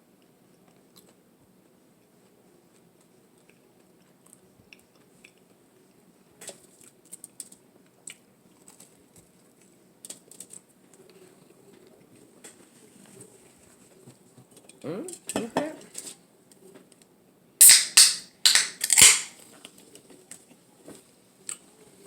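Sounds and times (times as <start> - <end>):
sandwich being chewed: 0.2 - 1.2, 2.0 - 14.1.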